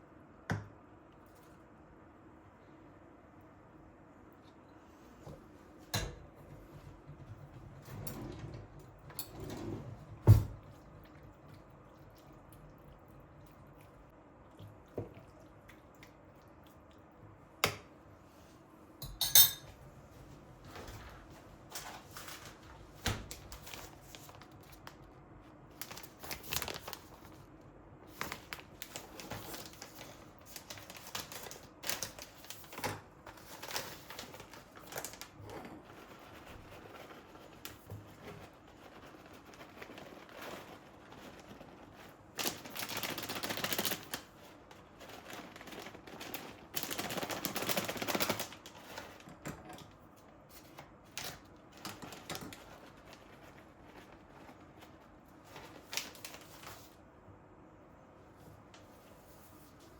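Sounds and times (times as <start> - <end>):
utensils clinking: 19.0 - 19.7
dishes clattering: 19.0 - 19.8.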